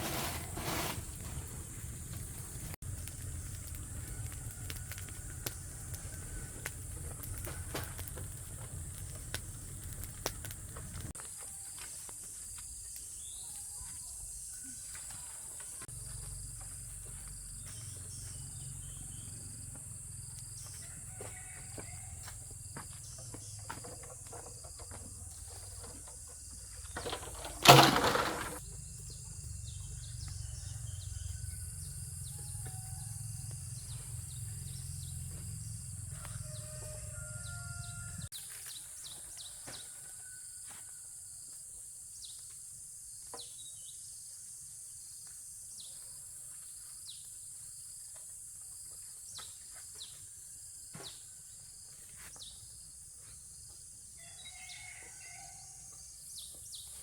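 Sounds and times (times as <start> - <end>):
small ticks: 2.9 - 11.1
insect drone: 15.6 - 38.5.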